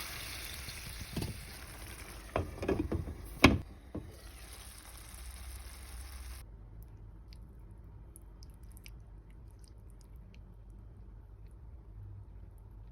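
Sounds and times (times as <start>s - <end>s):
food sizzling in a pan: 0.0s - 2.4s, 3.9s - 6.4s
soft wet sounds: 6.9s - 12.9s.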